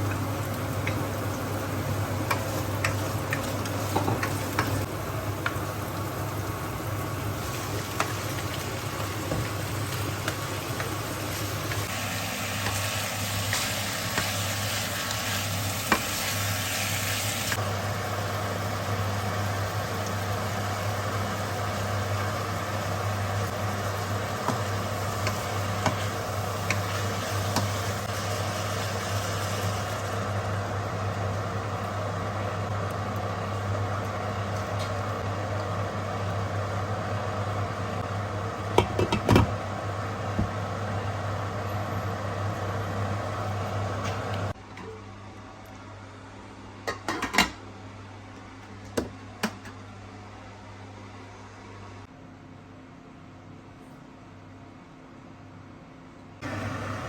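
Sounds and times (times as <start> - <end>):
food frying and sizzling in a pan: 0.0 - 44.6, 56.4 - 57.0.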